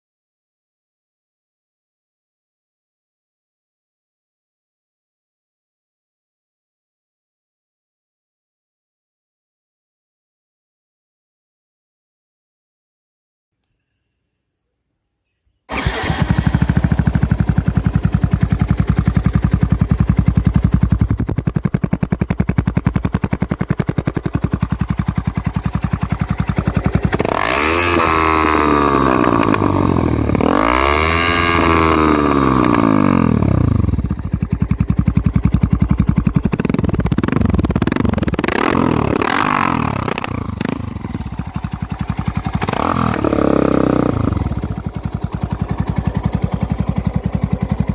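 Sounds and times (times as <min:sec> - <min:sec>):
motorcycle engine idling and revving: 0:15.7 - 0:47.9.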